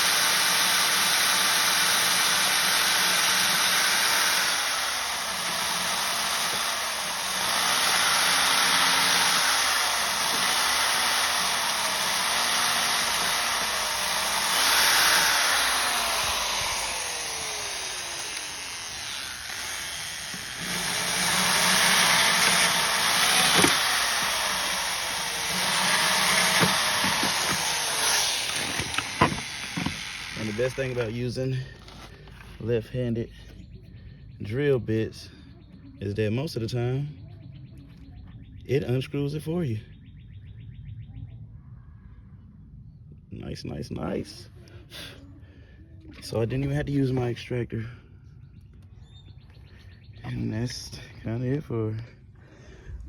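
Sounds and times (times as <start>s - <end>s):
electric drill running: 0.0s - 32.1s.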